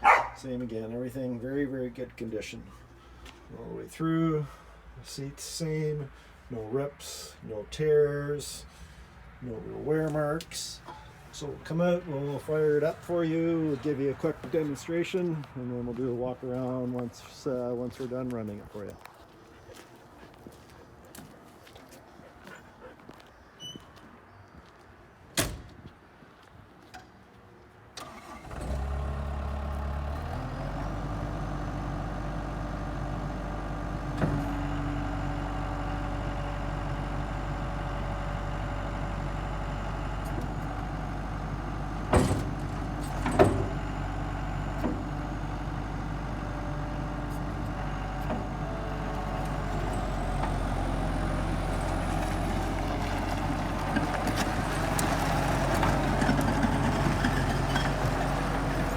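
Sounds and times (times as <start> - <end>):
diesel engine starting and idling: 28.0 - 58.9.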